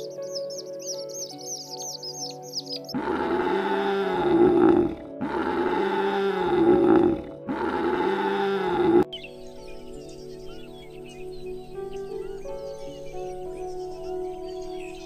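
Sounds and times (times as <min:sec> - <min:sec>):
large animal low calls: 0:03.0 - 0:09.1.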